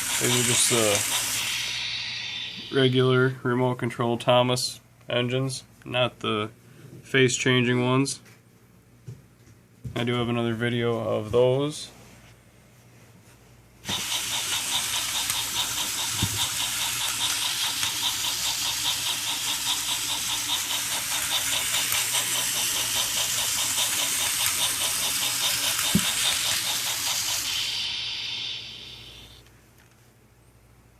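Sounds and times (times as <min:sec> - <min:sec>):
toy train motors whirring: 0:00.0 - 0:03.2, 0:13.8 - 0:29.5.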